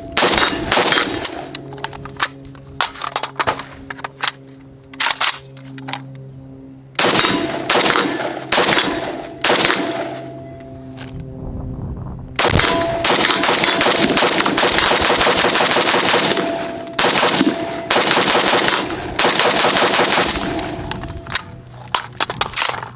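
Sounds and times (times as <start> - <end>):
rifle firing rapidly: 0.2 - 1.5, 7.0 - 10.2, 12.4 - 21.0.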